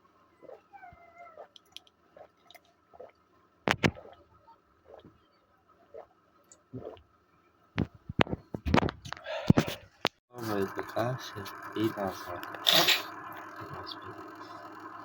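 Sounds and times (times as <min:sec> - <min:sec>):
man coughing: 0:12.6 - 0:13.1.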